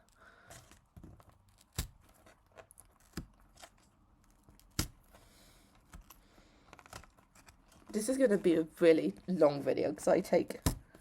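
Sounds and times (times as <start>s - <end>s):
sharp crackles of packaging: 0.1s - 8.2s.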